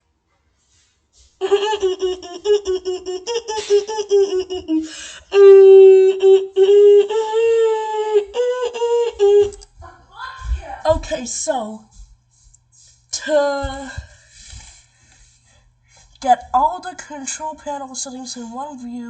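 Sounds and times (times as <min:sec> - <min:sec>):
person laughing loudly: 0:01.4 - 0:09.6.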